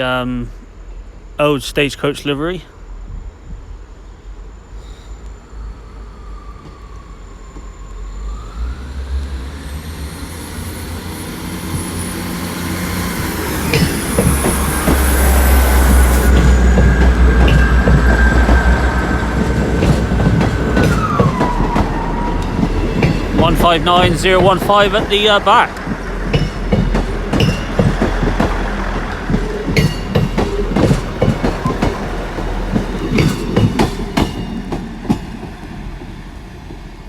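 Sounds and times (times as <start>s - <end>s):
diesel train engine rumble: 0.0s - 37.0s
train wheels clicking over rail joints: 10.4s - 37.0s.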